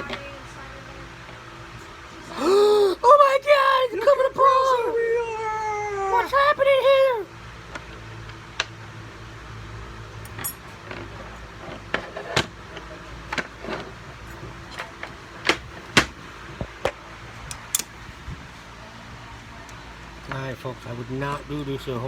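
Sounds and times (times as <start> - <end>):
steady low hum: 0.0 - 22.0
metal parts clicking and knocking: 10.2 - 16.1.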